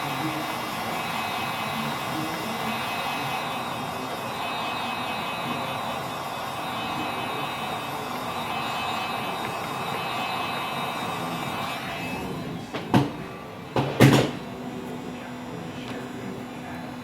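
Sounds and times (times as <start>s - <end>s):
heat gun whirring: 0.0s - 13.2s.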